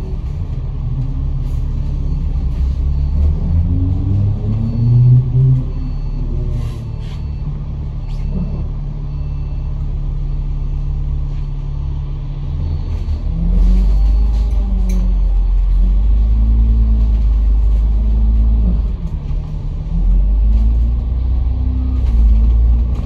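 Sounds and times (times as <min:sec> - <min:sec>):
bus engine from inside cabin: 0:00.0 - 0:23.0.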